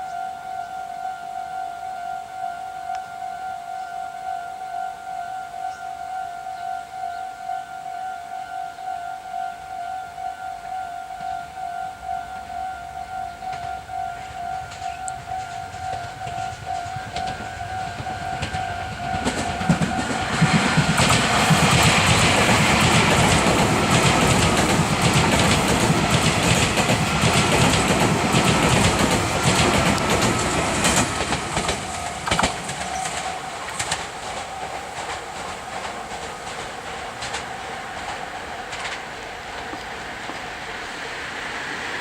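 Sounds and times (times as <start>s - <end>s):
level crossing warning bell: 9.5s - 33.6s
train wheels clattering over rail joints: 13.5s - 40.8s.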